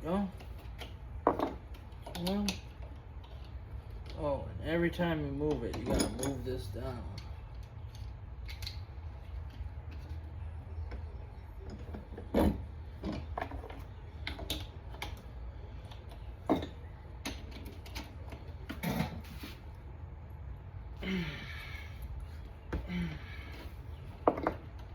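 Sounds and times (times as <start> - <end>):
steady low hum: 0.0 - 24.9
metal parts clicking and knocking: 5.5 - 10.1, 11.6 - 18.8.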